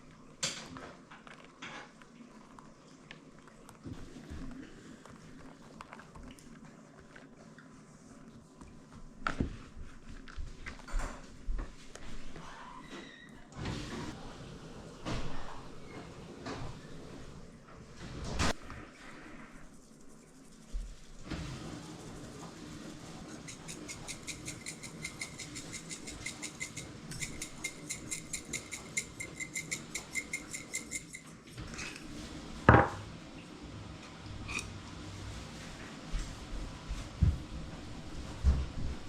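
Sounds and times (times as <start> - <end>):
utensil clicking against dish: 23.4 - 31.3.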